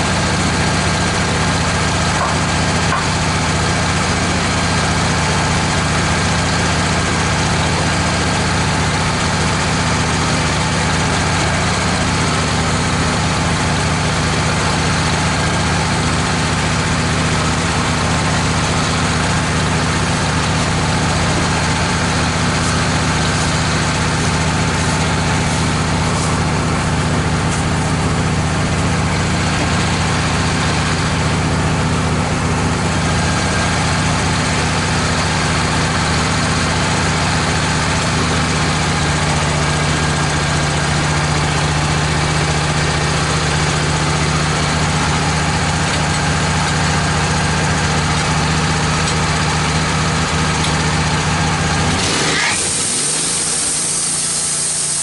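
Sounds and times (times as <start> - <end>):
band sawmill running: 0.0 - 55.0.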